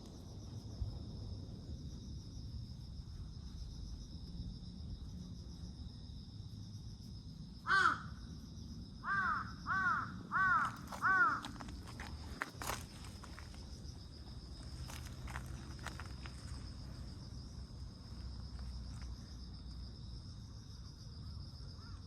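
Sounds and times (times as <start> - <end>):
crow cawing: 7.7 - 8.2, 9.0 - 11.6, 21.8 - 22.0
insect trilling: 9.0 - 19.2.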